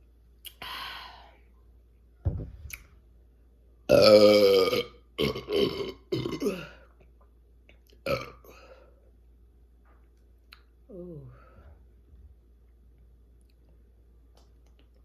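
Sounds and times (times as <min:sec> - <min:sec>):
woman burping: 0:03.9 - 0:06.9, 0:08.0 - 0:08.6.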